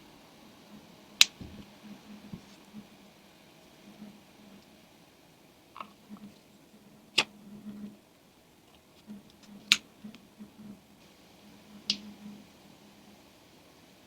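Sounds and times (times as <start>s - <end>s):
faint low hum: 0.0s - 14.0s
soft taps and rustles: 1.3s - 1.7s, 2.3s - 2.8s.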